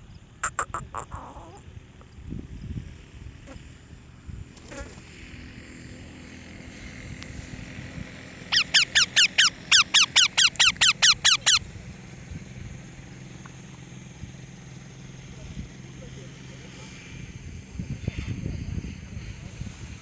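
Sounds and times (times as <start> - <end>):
parrot calling: 0.4 - 1.6, 8.5 - 11.6.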